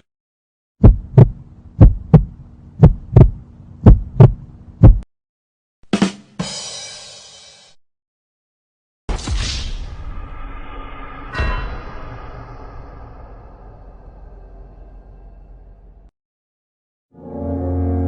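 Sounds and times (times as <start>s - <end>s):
low hum: 0.8s - 5.0s, 10.1s - 16.1s
heartbeat thumps: 0.8s - 5.1s
sharp hit: 9.1s - 14.7s.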